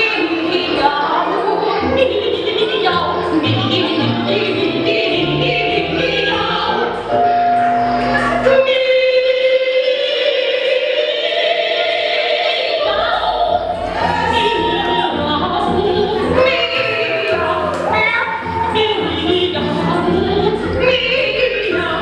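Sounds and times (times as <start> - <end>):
band backing music: 0.0 - 9.8, 10.5 - 22.0.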